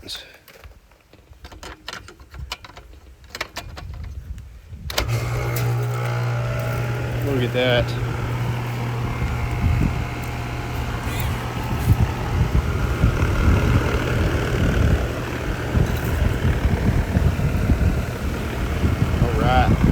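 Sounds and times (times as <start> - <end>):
condenser fan rushing air: 4.9 - 19.9
gusty rumble: 4.9 - 19.9
compressor electrical hum: 5.0 - 19.9.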